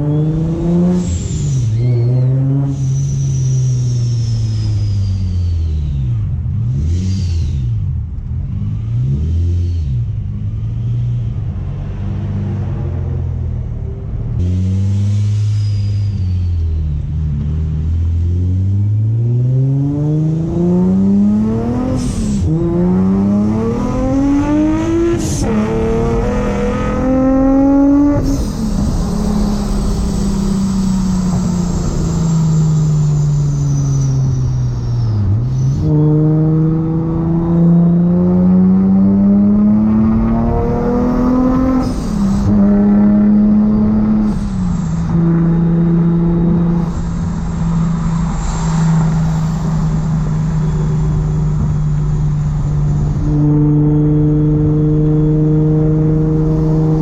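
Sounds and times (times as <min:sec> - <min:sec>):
car engine revving through gears: 0:00.0 - 0:57.0
supercharger whine: 0:00.0 - 0:57.0
blow-off valve hiss: 0:28.2 - 0:34.4.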